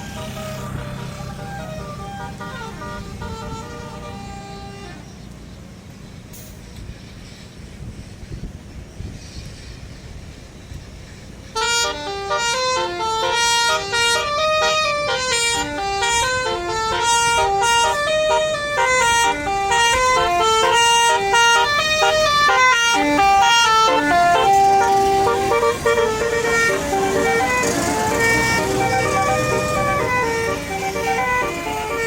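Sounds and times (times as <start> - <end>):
musical bus horn melody: 0.0 - 5.2, 11.5 - 32.0.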